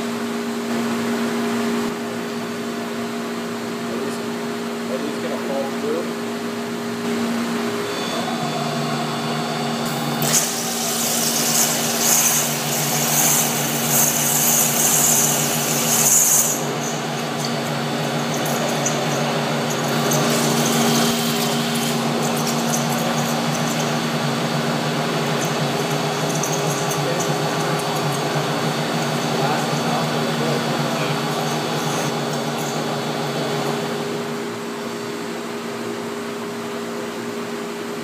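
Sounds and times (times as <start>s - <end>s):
machine hum: 3.8s - 35.1s
loud high hiss of water jet: 10.0s - 16.3s.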